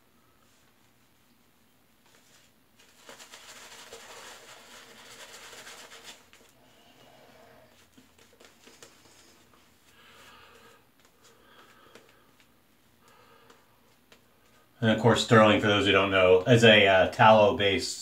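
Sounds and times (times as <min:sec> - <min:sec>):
shaving brush swishing lather: 0:02.2 - 0:06.6.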